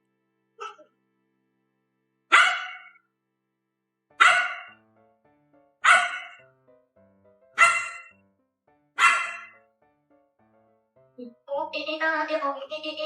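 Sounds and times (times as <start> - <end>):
faint background music: 0.0 - 3.2, 4.1 - 13.0
sharp animal calls: 0.6 - 0.9, 2.3 - 3.0, 4.2 - 4.8, 5.8 - 6.4, 7.6 - 8.2, 9.0 - 9.6.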